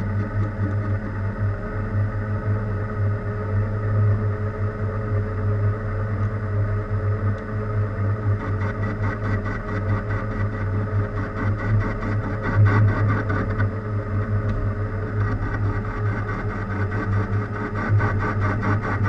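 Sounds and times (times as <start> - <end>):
fast rough rattle: 15.1 - 19.0.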